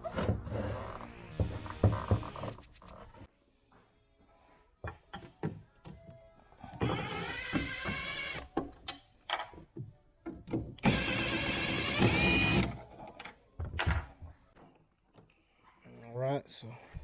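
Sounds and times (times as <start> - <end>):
cordless drill motor whining: 6.8 - 8.4, 10.8 - 12.8.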